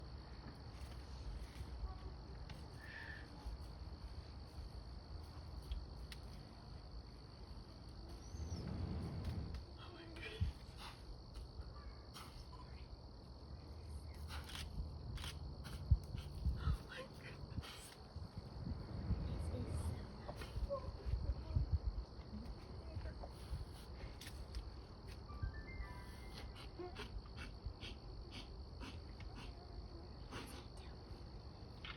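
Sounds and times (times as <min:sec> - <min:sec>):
crickets trilling: 0:00.0 - 0:31.9
faint outdoor background: 0:00.0 - 0:31.9
short low rumble: 0:08.2 - 0:09.6.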